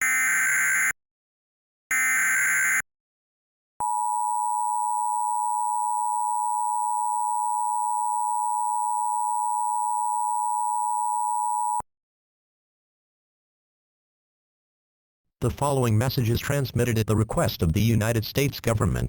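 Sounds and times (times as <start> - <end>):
two-tone alert alarm: 0.0 - 1.0, 1.9 - 2.8.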